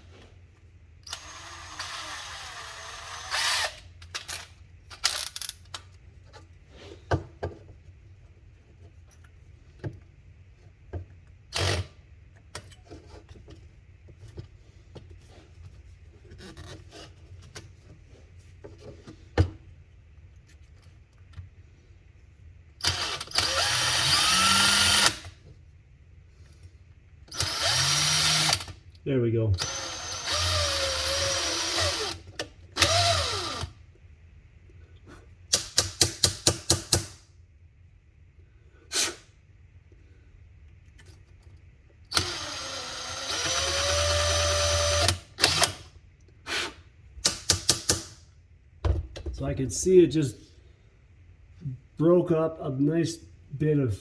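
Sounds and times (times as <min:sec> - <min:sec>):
power drill whining: 0:01.1 - 0:03.8, 0:22.8 - 0:25.3, 0:27.3 - 0:28.7, 0:29.6 - 0:33.7, 0:42.1 - 0:45.9.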